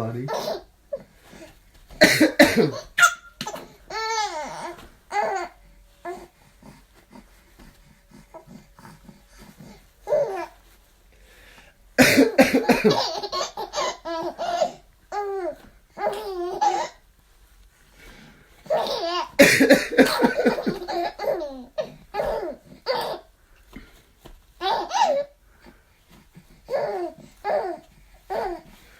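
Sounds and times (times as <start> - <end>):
baby laughing: 0.3 - 0.7, 2.0 - 5.5, 12.0 - 17.0, 18.7 - 23.3, 24.6 - 25.3
man coughing: 2.0 - 3.0, 12.0 - 13.2, 19.4 - 21.0
baby babbling: 2.7 - 6.8, 8.1 - 10.6, 12.9 - 17.0, 18.7 - 19.4, 20.4 - 23.3, 26.7 - 28.7.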